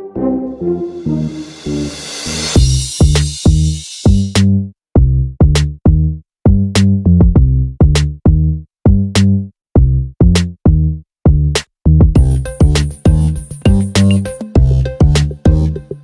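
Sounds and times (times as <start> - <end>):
cymbal-like hiss: 1.3 - 4.3
drum machine bass hits: 2.6 - 9.2, 9.8 - 15.9.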